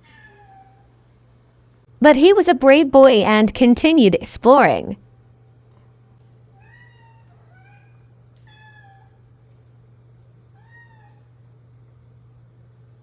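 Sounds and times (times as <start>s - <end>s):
cat meowing: 0.0s - 0.8s, 6.6s - 9.1s, 10.6s - 11.2s
low steady hum: 0.7s - 13.0s.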